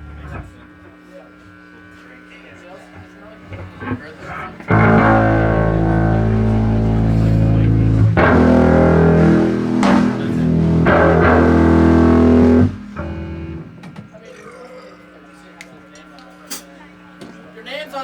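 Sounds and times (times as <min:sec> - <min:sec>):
electric guitar and bass chords: 0:00.0 - 0:00.6, 0:03.5 - 0:13.9
amp noise: 0:02.0 - 0:14.2.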